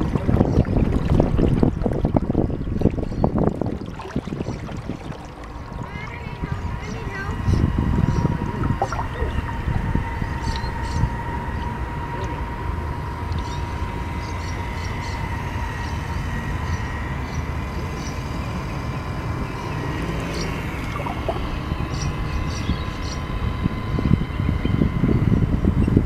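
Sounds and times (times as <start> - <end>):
low rumble: 0.0 - 11.8, 20.5 - 22.9
electric motor whine: 0.0 - 26.0.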